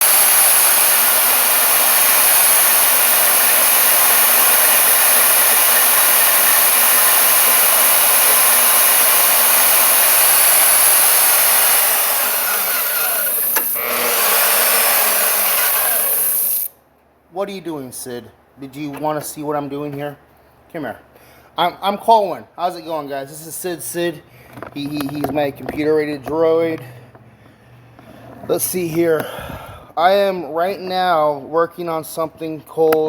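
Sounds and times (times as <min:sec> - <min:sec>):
band saw cutting: 0:00.0 - 0:16.7
sharp click: 0:13.5 - 0:13.8.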